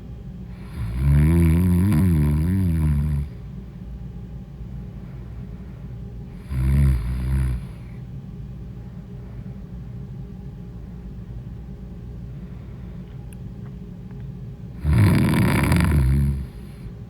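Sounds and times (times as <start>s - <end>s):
steady low hum: 0.0s - 17.0s
woman snoring: 0.5s - 3.4s, 6.4s - 7.9s, 14.8s - 16.8s.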